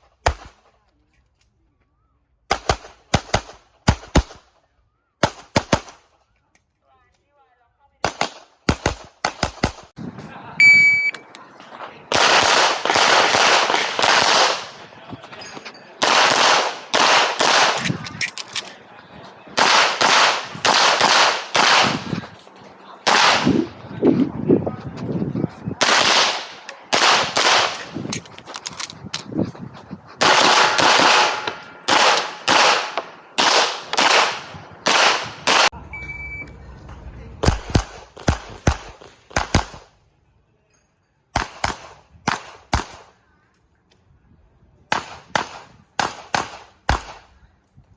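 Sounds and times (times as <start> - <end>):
short electronic beep: 10.6 - 11.2, 35.8 - 36.5.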